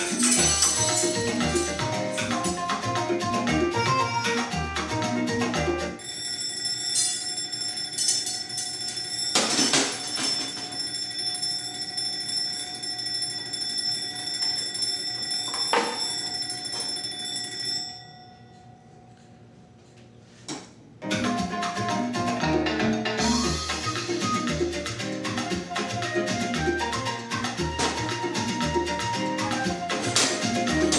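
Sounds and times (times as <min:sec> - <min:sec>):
alarm clock bell ringing: 0:00.0 - 0:02.6, 0:06.0 - 0:18.9.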